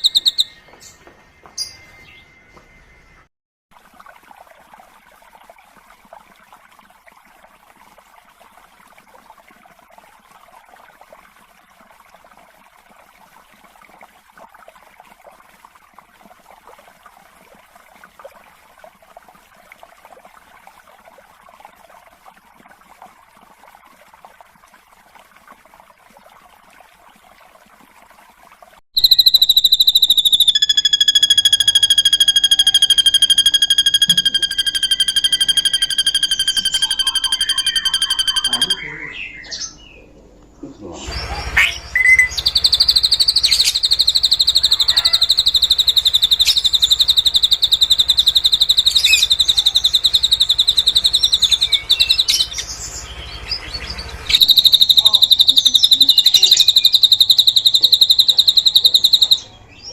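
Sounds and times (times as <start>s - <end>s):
faint bird chirring chatter: 0.0s - 1.0s, 29.0s - 40.1s, 41.6s - 53.0s, 54.3s - 59.9s
loud steady high whistle: 29.0s - 38.9s.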